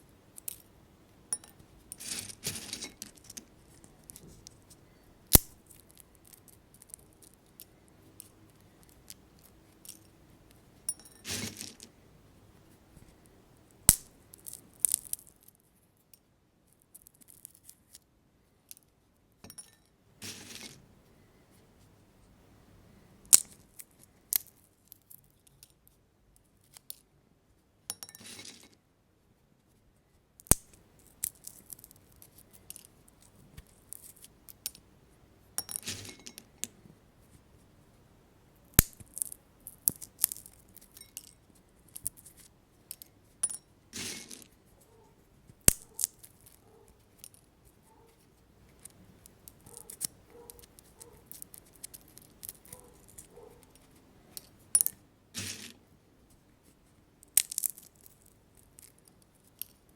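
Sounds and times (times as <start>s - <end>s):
shells clinking in a glass bowl: 1.4s - 3.4s, 54.8s - 55.7s
seed shells cracking: 5.3s - 10.0s, 13.9s - 15.6s, 30.4s - 32.9s, 38.7s - 43.1s, 45.6s - 46.6s, 48.7s - 53.9s, 54.8s - 55.8s, 57.2s - 59.9s.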